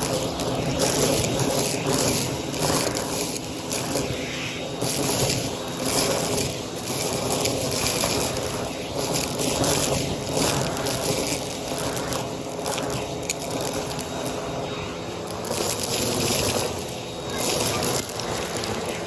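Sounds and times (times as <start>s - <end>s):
rushing air hiss: 0.0s - 19.0s
vacuum cleaner motor hum: 0.0s - 19.0s.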